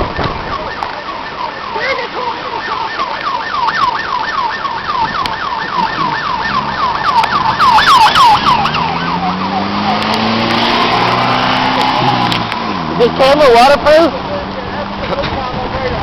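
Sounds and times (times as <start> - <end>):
emergency siren yelping: 0.0 - 12.8
rain: 0.0 - 16.0
wind: 0.0 - 16.0.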